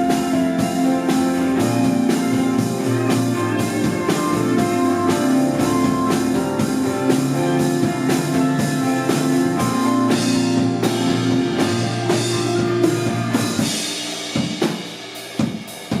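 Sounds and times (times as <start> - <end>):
drum hits: 0.0 - 16.0
rock band playing: 0.0 - 16.0.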